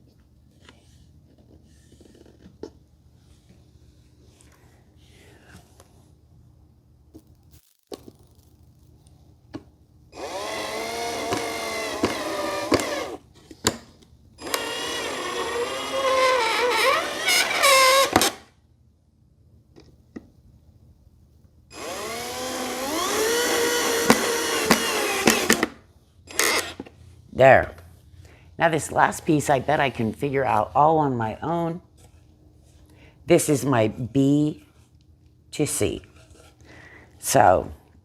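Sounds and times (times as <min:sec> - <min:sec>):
cordless drill driving screws: 0:10.2 - 0:13.2, 0:14.4 - 0:18.4, 0:21.7 - 0:26.9.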